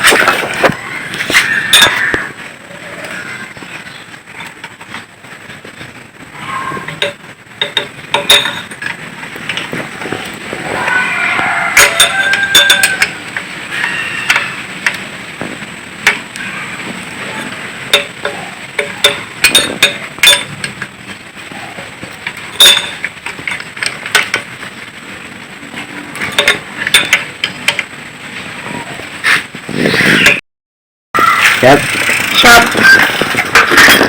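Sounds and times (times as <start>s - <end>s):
hand tools clinking on engine parts: 6.9s - 9.7s, 17.9s - 20.9s, 22.1s - 24.5s, 26.2s - 27.9s.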